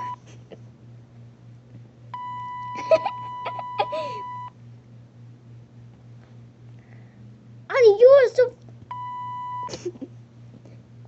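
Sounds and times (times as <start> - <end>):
high censor bleep tone: 2.2 - 4.5, 8.9 - 9.7.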